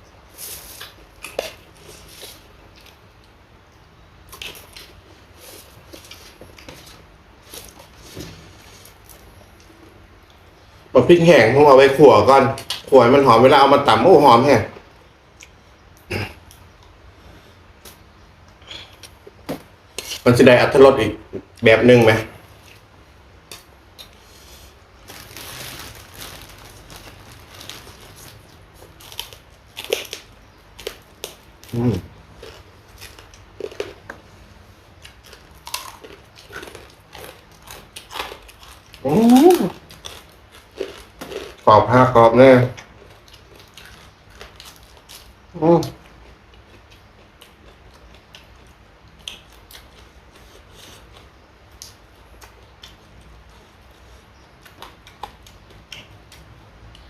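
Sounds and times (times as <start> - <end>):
person chewing and crunching food: 0.3 - 3.4, 4.3 - 10.4, 22.6 - 41.7, 42.8 - 57.0
crisp food crunching: 23.5 - 34.3, 35.0 - 41.8, 42.7 - 45.4.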